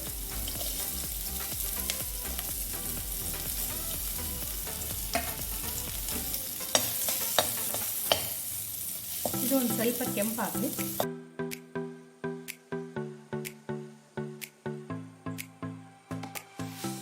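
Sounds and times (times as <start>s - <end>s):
onion and garlic sizzling in oil: 0.0s - 11.0s.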